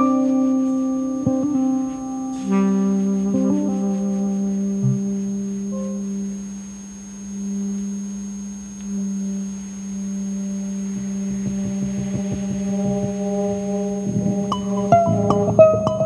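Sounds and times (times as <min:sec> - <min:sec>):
plucked notes: 0:00.0 - 0:06.0, 0:10.5 - 0:16.0
low drone note: 0:00.0 - 0:16.0
quieter held notes: 0:00.0 - 0:16.0.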